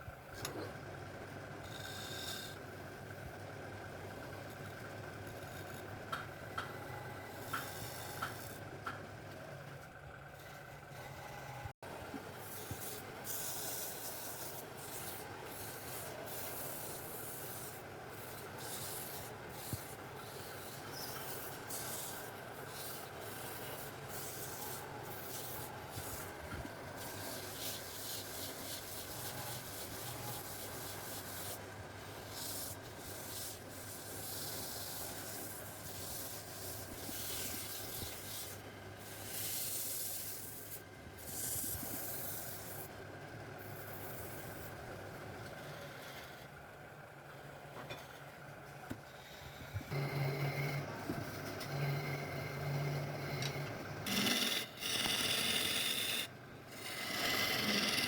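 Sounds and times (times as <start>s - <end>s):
wood being sanded: 12.4s - 42.8s, 49.2s - 58.0s.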